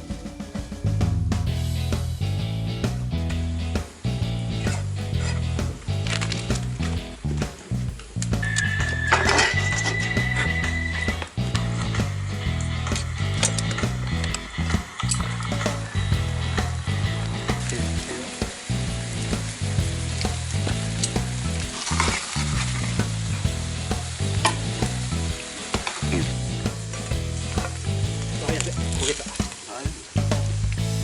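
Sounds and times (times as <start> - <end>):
food sizzling in a pan: 17.8 - 30.2.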